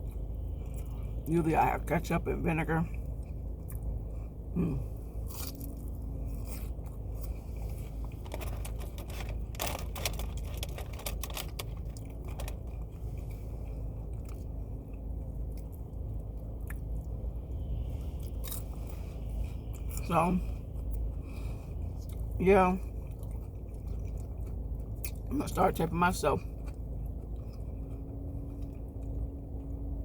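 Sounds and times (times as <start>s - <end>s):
person chewing crunchy food: 0.0s - 1.2s, 3.0s - 25.3s, 26.4s - 30.0s
steady low hum: 0.0s - 30.0s.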